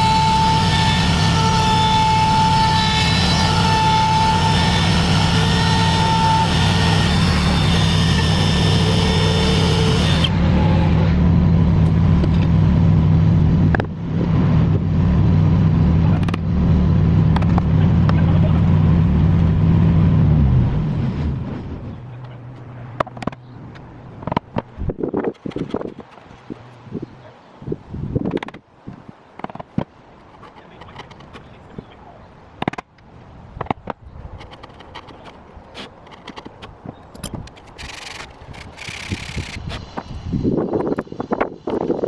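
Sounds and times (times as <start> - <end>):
motor humming and winding down: 0.0 - 21.5, 37.7 - 42.0.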